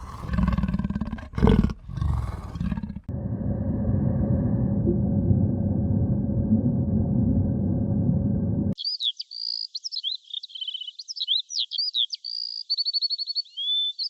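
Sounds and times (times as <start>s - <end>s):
low rumbling noise: 0.0s - 8.8s
songbird singing: 8.8s - 14.0s.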